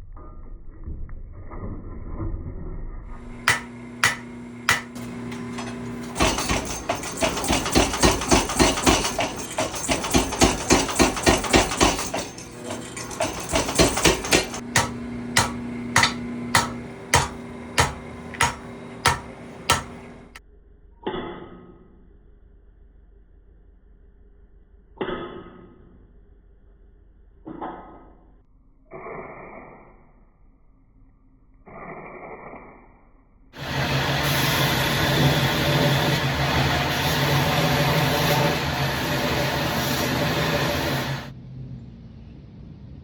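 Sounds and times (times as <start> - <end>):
power hammer motor hum: 3.2 - 20.4, 33.6 - 41.3
hammer blows on steel: 3.4 - 20.2.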